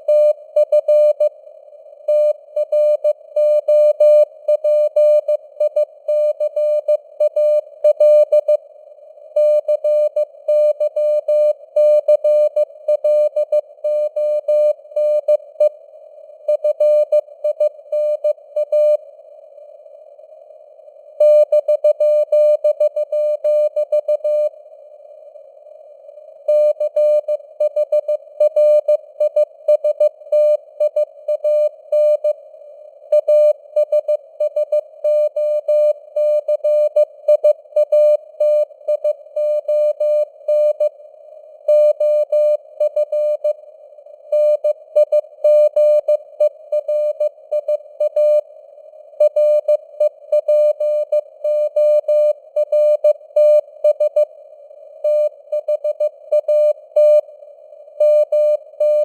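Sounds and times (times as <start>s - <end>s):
morse code tone: 58.0s - 59.0s.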